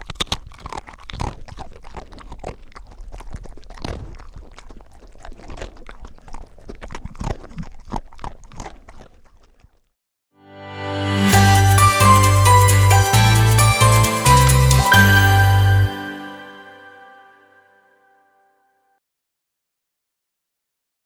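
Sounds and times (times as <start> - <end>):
dog crunching dry food: 0.0 - 9.9.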